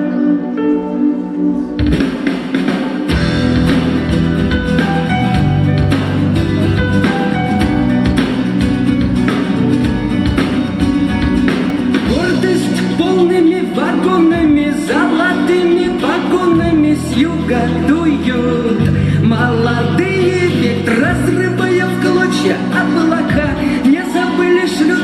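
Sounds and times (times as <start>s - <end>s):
pop band instrumental: 0.0s - 25.0s.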